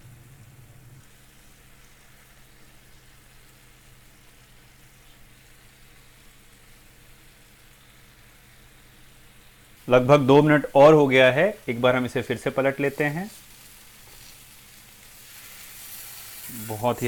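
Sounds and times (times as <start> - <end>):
steady low hum: 0.0 - 5.8
paneer sizzling in oil: 0.0 - 17.0.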